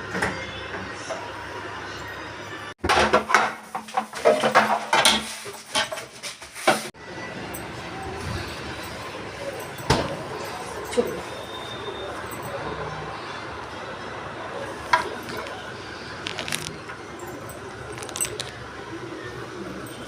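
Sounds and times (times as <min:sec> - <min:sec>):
dishes clinking and clattering: 0:02.8 - 0:06.9, 0:08.4 - 0:11.5.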